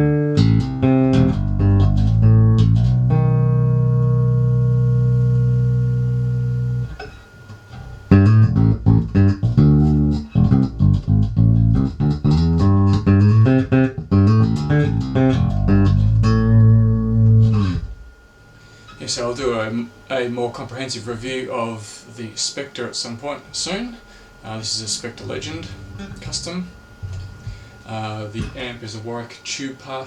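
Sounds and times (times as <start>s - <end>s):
electric bass low note ringing: 0.0s - 7.1s, 7.8s - 18.2s, 24.9s - 28.6s
electric bass riff: 0.0s - 7.2s, 7.8s - 18.1s, 25.3s - 27.8s.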